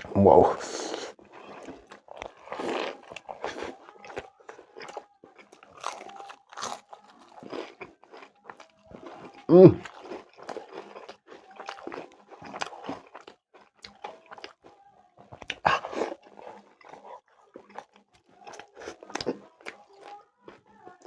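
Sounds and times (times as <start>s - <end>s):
person chewing food: 0.7s - 21.0s
crunchy bites: 1.6s - 14.0s.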